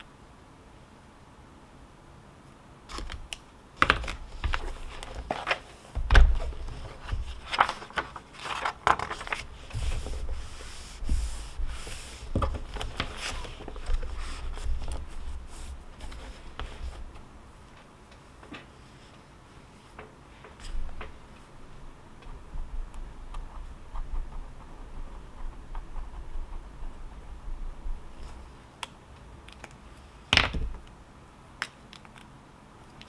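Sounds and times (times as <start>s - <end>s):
objects handled on a desk: 3.8s - 17.3s.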